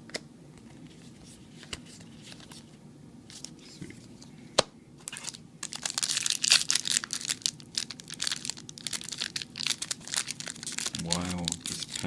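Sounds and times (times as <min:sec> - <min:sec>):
foil wrapper crinkling: 0:05.0 - 0:12.0.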